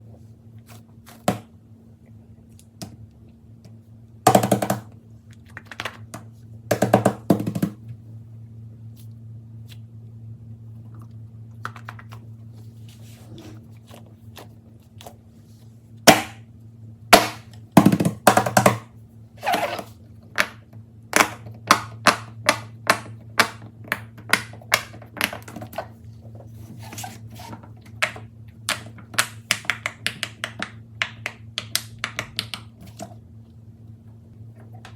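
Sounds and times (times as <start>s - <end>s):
low hum: 0.0s - 17.8s.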